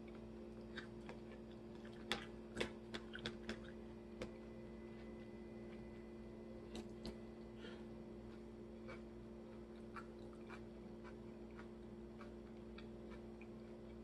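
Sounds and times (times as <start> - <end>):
crunching of salad being eaten: 0.0 - 3.8, 8.2 - 14.0
low steady hum: 0.0 - 14.0.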